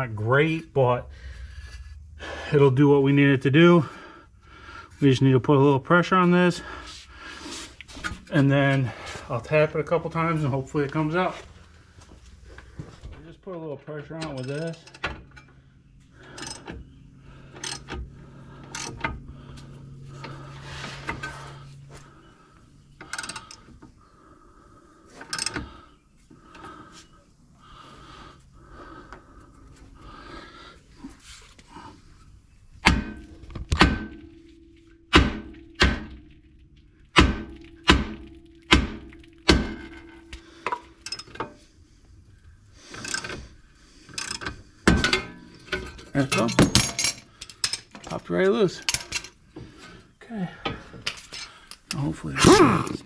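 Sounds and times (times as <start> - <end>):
tools clanking and clicking: 12.6 - 15.6, 16.2 - 22.0, 22.9 - 24.0, 25.1 - 25.9, 32.8 - 41.7, 42.8 - 52.2.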